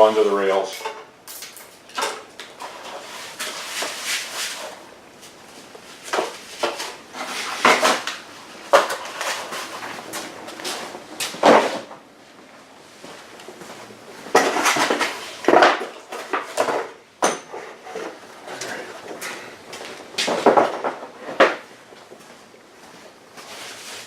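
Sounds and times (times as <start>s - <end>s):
packaging rustling and scraping: 2.6s - 11.9s, 14.2s - 17.0s, 23.4s - 24.0s
knocks and clinks: 16.6s - 17.6s.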